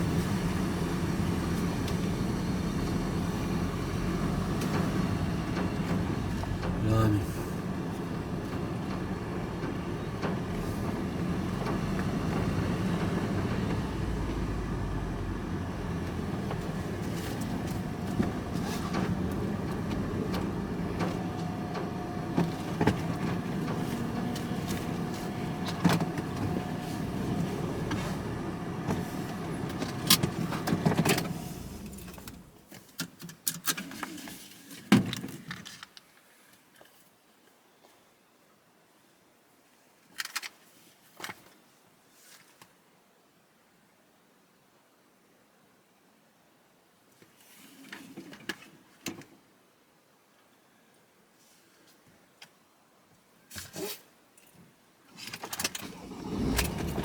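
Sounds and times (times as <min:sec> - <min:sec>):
vehicle engine running: 0:00.0 - 0:32.5, 0:55.8 - 0:57.0.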